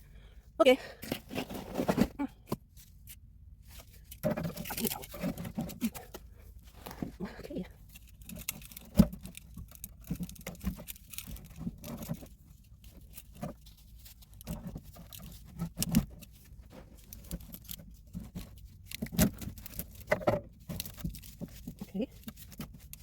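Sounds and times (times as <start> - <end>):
rustling and scraping of tools: 0.9 - 23.0.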